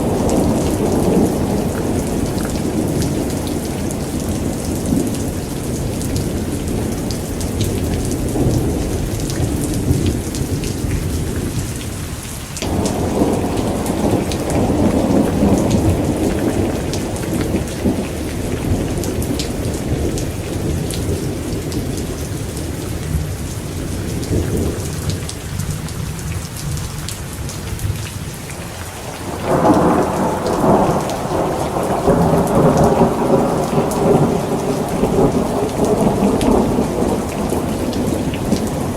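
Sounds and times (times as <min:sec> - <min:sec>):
heavy rain: 0:00.0 - 0:38.9
rolling thunder: 0:12.6 - 0:26.8, 0:29.1 - 0:38.9.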